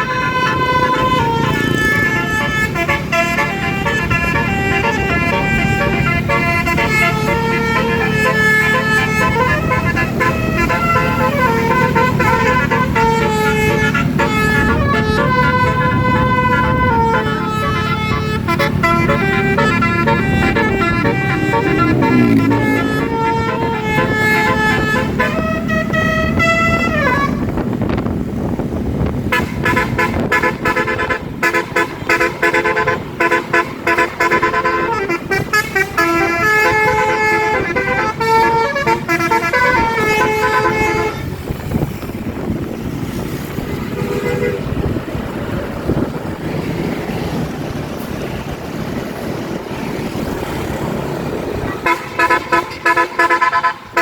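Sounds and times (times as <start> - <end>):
musical bus horn playing tunes: 0.0 - 45.1, 51.6 - 54.0
traffic noise: 0.0 - 54.0.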